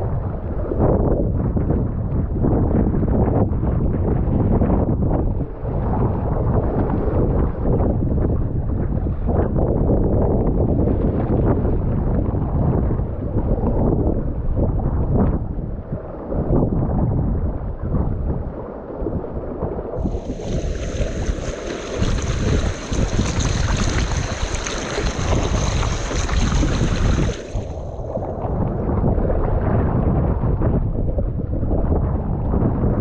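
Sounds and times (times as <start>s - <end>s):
wind buffeting microphone: 0.0s - 33.0s.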